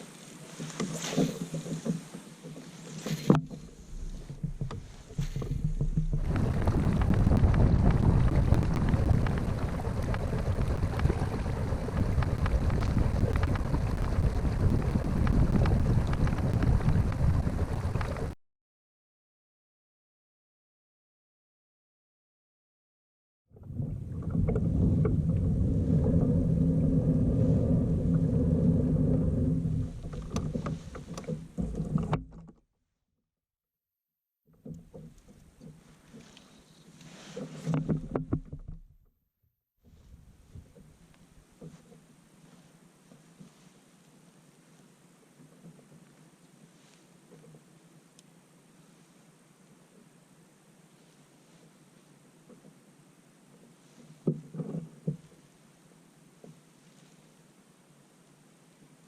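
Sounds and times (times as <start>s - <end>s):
wind rumbling on microphone: 3.0s - 18.4s, 23.6s - 32.2s, 39.9s - 41.9s
water slaps and splashes: 5.2s - 18.4s.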